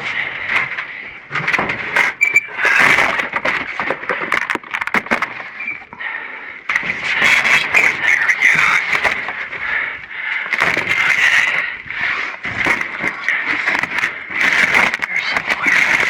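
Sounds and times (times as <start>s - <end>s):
cardboard scraping and rustling: 0.0s - 5.6s, 10.5s - 16.0s.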